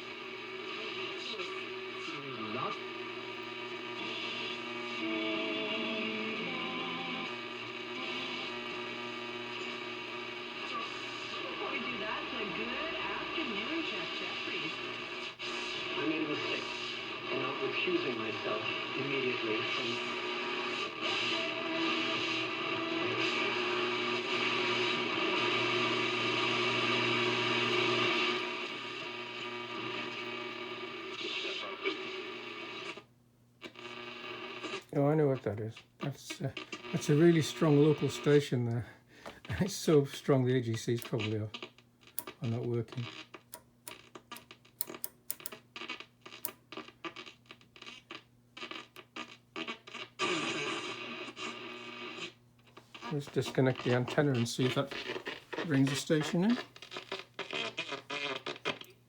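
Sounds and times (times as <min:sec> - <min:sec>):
radio receiver hiss and distortion: 0:00.0 - 0:59.0
steady radio whistles: 0:09.6 - 0:32.4.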